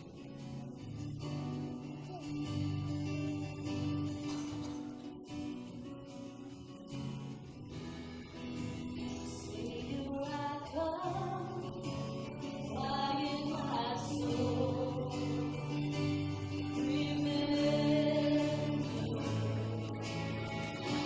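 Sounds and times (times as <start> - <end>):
guitar-led band: 0.0 - 21.0
person singing: 9.0 - 21.0.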